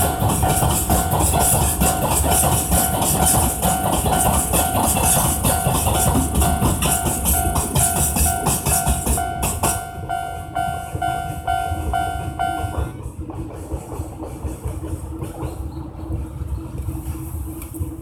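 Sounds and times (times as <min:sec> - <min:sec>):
level-crossing alarm bell ringing: 0:00.0 - 0:13.0
freight train rumbling: 0:00.0 - 0:18.0
steady train hum: 0:00.0 - 0:18.0.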